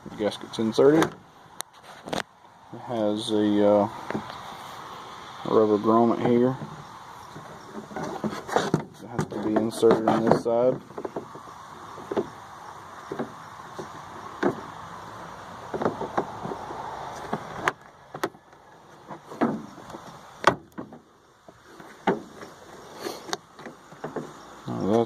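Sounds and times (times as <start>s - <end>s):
light rustle: 1.6s - 2.3s.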